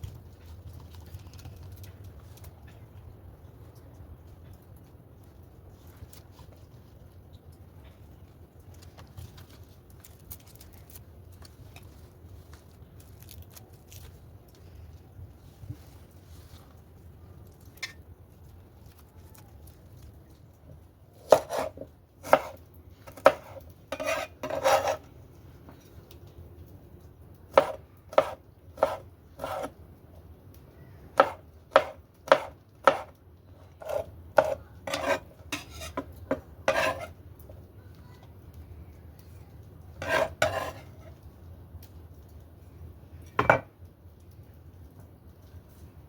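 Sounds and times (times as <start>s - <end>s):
knife chopping on cutting board: 21.2s - 25.0s, 27.5s - 29.7s, 31.2s - 33.1s, 33.8s - 37.1s
knife scraping cutting board: 21.2s - 25.1s, 27.5s - 29.7s, 31.2s - 33.1s, 33.8s - 37.2s, 40.0s - 41.1s.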